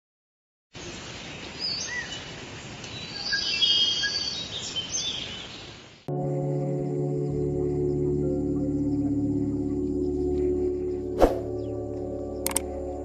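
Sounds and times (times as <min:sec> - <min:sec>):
outdoor background hiss: 0:00.8 - 0:08.0
birds chirping and calling: 0:01.4 - 0:05.8.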